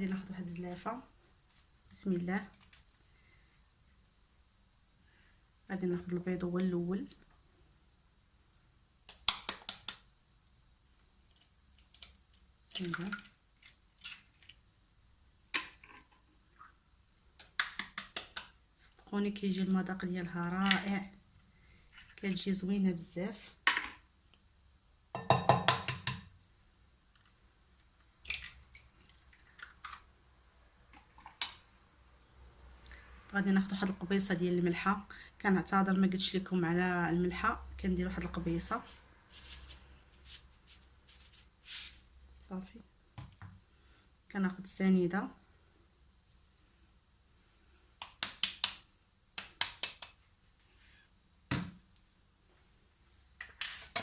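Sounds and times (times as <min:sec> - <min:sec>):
heavy knock on bowl: 0:25.2 - 0:26.0.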